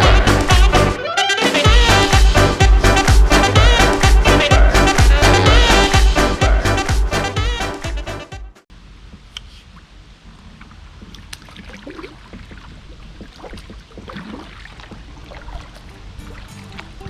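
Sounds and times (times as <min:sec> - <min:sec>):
steady low rumble: 0:00.0 - 0:01.0, 0:01.7 - 0:07.4
paddle splashing in water: 0:11.0 - 0:17.0.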